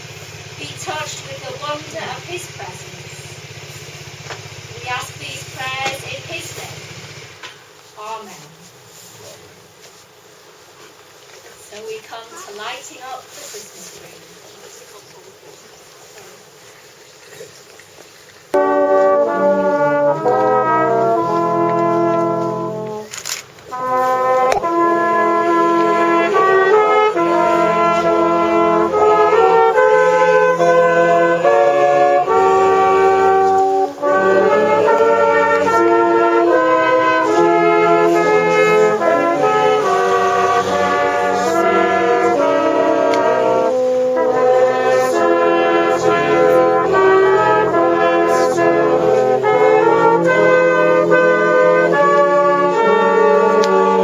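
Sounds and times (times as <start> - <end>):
brass band playing slow tune: 0.0 - 7.0, 18.5 - 54.0.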